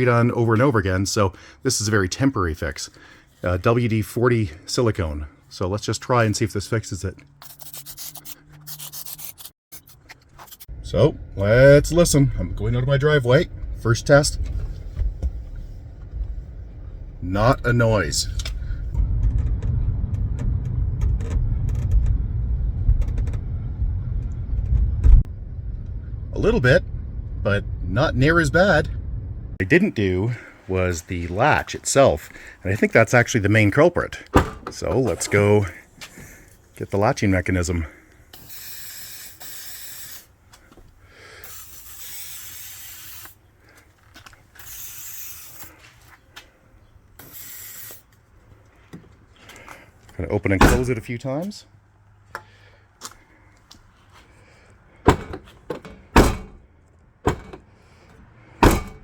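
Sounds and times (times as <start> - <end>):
road and tyre rumble: 2.8 - 59.0
ticks and creaks in car cabin: 18.4 - 22.2, 22.8 - 23.5, 24.2 - 25.3
aerosol spray hissing: 41.4 - 43.4, 44.6 - 45.7, 47.3 - 48.0.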